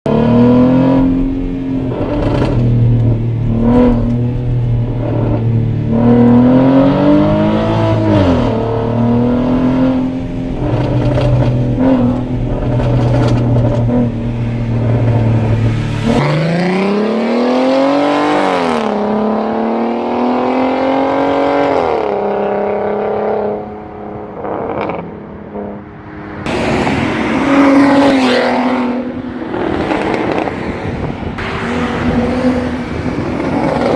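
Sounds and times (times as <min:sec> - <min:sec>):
car engine idling and revving: 0:00.1 - 0:33.9
exhaust pops and crackles: 0:10.5 - 0:14.2.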